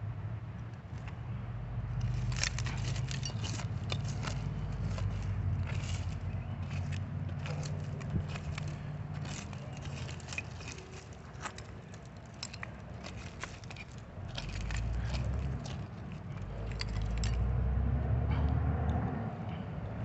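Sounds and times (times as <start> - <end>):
glass and bottles clinking: 2.3 - 11.7, 12.3 - 17.5.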